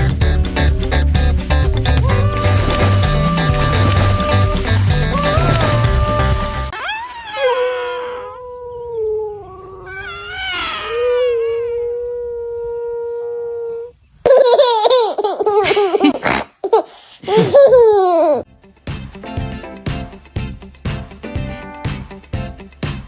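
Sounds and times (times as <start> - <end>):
wavering vocal call: 1.9 - 14.0
laughter-like bursts: 14.4 - 16.4.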